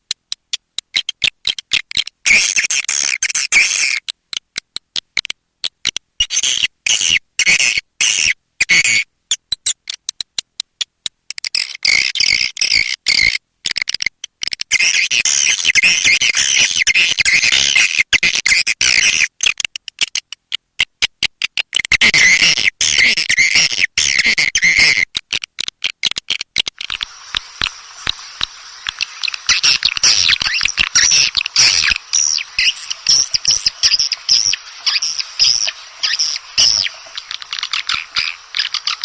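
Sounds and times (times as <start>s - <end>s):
swiftlet chirps and clicks: 26.6s - 39.0s.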